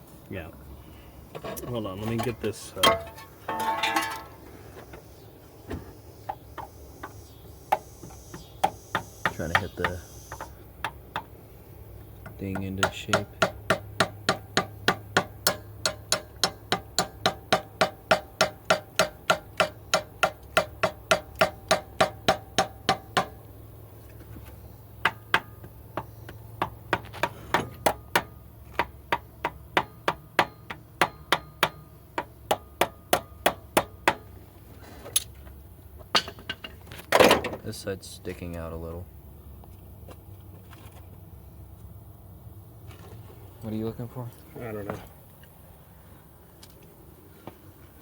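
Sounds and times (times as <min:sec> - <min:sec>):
hammer striking metal part: 0:12.5 - 0:23.4.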